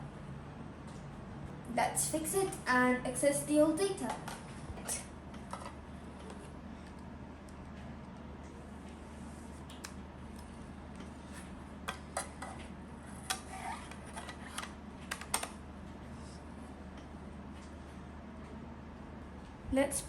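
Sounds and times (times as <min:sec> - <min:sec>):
steady low hum: 0:00.0 - 0:20.0
hard drive handling clicks: 0:13.3 - 0:15.6.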